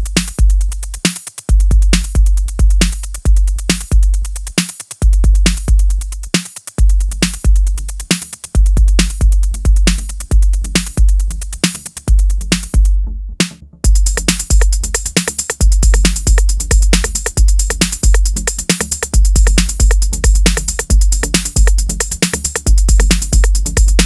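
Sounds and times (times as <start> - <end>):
kick drum: 0.0 - 24.0
electronic dance music: 13.9 - 24.0.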